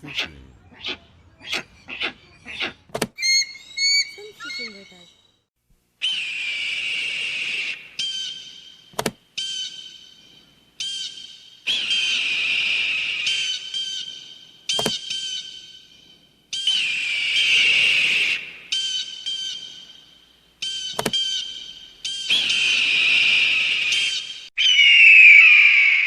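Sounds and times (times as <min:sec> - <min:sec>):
eagle screeching and piping: 0:00.1 - 0:05.2, 0:06.0 - 0:10.1, 0:10.8 - 0:15.8, 0:16.5 - 0:20.0, 0:20.6 - 0:26.0
sharp clicks: 0:09.0 - 0:09.2, 0:20.9 - 0:21.3.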